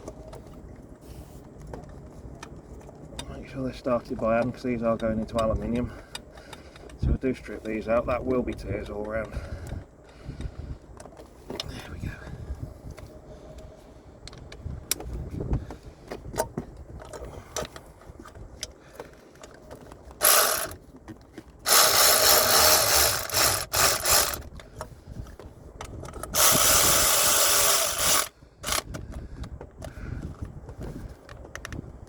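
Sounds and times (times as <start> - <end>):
ratchet wrench clicking: 20.2 - 20.8, 21.7 - 24.5, 26.3 - 28.9.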